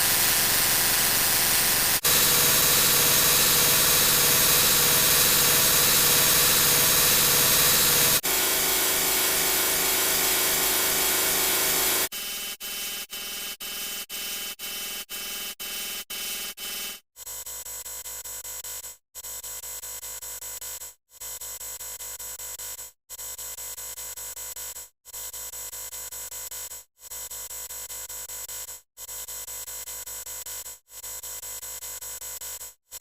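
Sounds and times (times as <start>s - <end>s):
harsh distorted synthesizer buzz: 0.0s - 12.1s.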